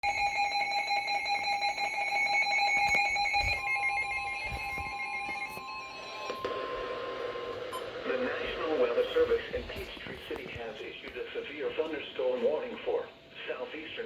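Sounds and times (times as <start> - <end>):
pulsing electronic alarm: 0.0 - 9.2.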